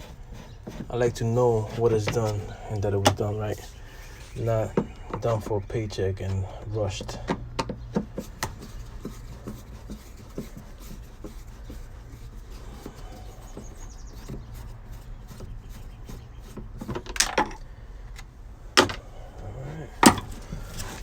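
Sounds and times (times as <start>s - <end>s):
parts clattering: 0.0s - 21.0s
clicks of car trim being handled: 7.0s - 19.0s, 20.0s - 21.0s.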